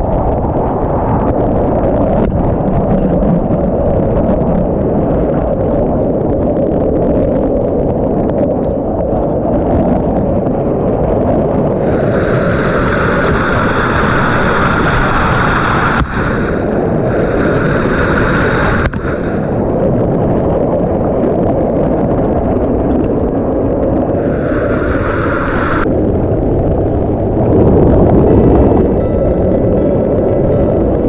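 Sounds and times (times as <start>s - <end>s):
waterfall rushing: 24.2s - 25.8s.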